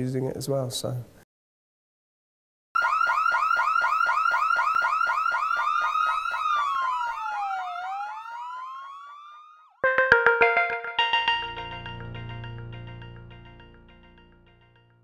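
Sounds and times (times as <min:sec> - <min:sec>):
siren tone sliding in pitch: 0:02.8 - 0:11.0
electronic siren chirping: 0:02.8 - 0:11.1.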